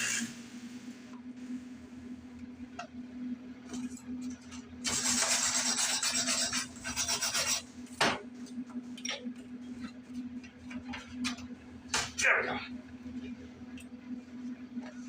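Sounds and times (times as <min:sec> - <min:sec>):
steady low hum: 0:00.0 - 0:15.0
tool scraping on metal: 0:04.9 - 0:07.7.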